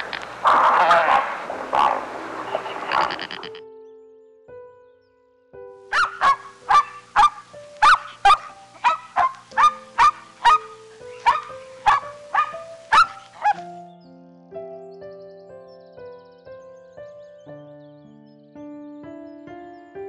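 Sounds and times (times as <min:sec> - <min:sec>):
background music: 0:02.8 - 0:20.0.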